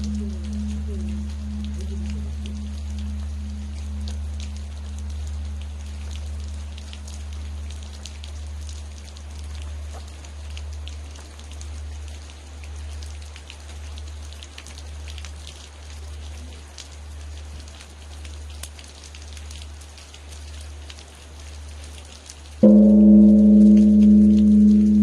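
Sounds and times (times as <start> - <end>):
low humming temple bell: 0.0 - 6.4, 22.6 - 25.0
rain falling: 0.0 - 25.0.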